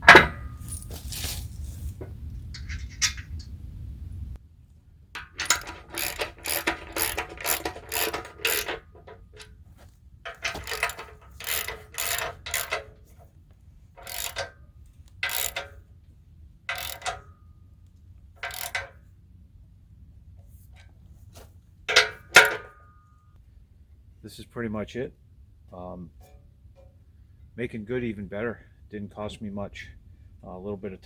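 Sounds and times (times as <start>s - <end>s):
socket ratchet wrench clicking: 5.2s - 9.5s, 10.3s - 12.9s, 14.0s - 15.8s, 16.7s - 17.3s, 18.4s - 19.0s.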